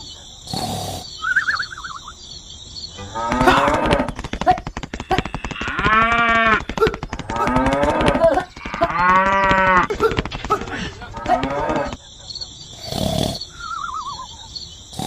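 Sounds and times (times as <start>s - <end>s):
cow mooing: 3.0s - 4.1s, 7.3s - 10.0s, 11.0s - 12.0s
fast clicking rattle: 3.7s - 12.0s.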